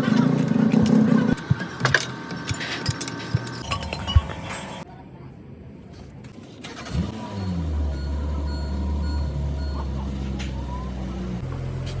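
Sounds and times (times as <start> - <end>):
car engine starting and idling: 6.6 - 12.0.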